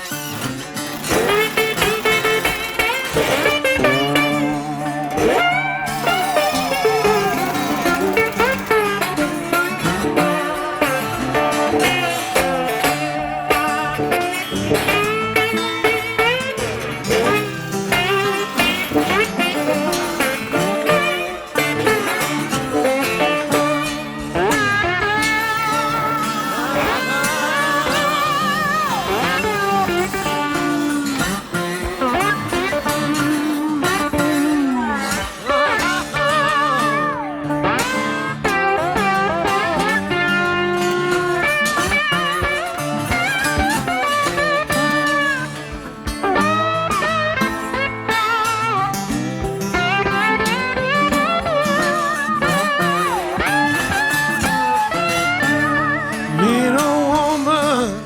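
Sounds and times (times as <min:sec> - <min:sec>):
slide guitar lead: 0:00.0 - 0:58.0.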